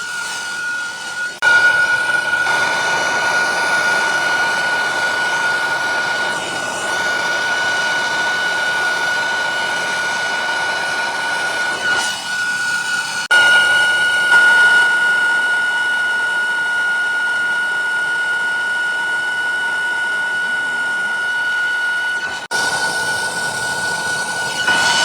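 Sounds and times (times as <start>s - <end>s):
torch flame hissing and whistling: 0.0s - 13.3s, 21.2s - 25.0s.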